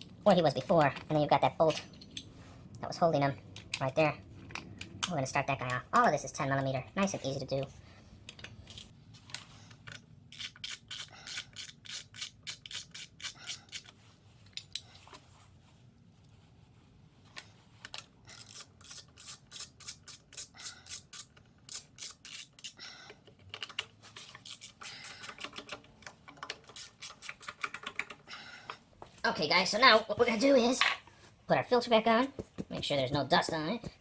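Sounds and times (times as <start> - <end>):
socket ratchet clicking: 9.9 - 13.9, 18.3 - 22.8, 24.3 - 28.2.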